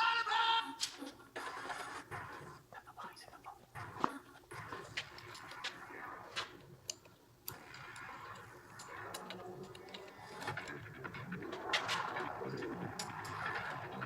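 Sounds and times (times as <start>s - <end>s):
low hum: 3.7s - 14.0s.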